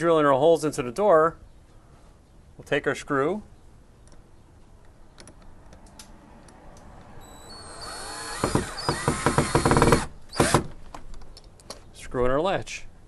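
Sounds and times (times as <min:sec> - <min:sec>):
power drill motor whine: 0:07.2 - 0:10.6.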